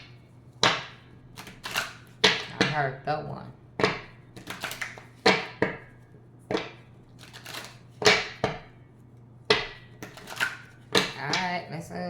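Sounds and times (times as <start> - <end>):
cards slapping on a table: 3.8 - 5.8.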